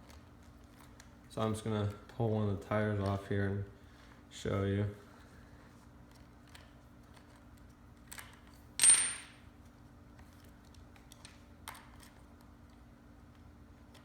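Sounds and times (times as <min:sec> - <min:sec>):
metal object clinking on hard surface: 0:08.8 - 0:09.3.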